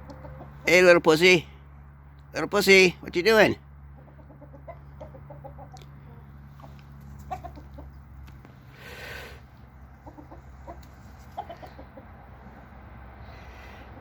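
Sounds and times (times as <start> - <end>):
chickens clucking: 0.0 - 1.0, 3.7 - 8.8, 9.4 - 12.8
steady low hum: 0.0 - 14.0.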